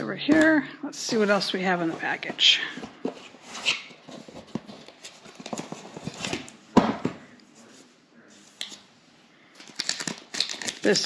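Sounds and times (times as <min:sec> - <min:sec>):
packaging rustling: 0:02.8 - 0:06.6, 0:09.5 - 0:11.0.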